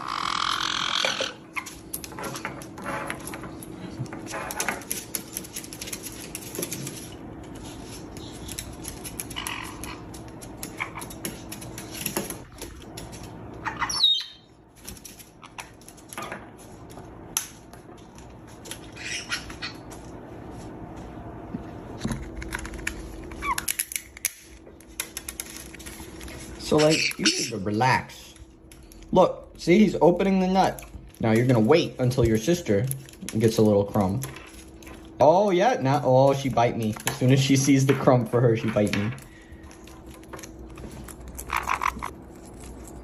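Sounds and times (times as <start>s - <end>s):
parrot squawks: 0.0s - 1.6s, 13.6s - 14.5s, 18.9s - 19.9s, 26.7s - 27.7s
steady low hum: 0.0s - 43.0s.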